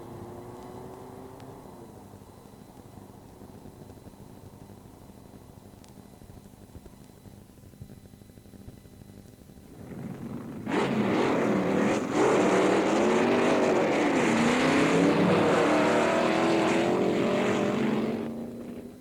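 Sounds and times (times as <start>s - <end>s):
motor vehicle engine running: 0.0s - 5.0s, 9.6s - 19.0s.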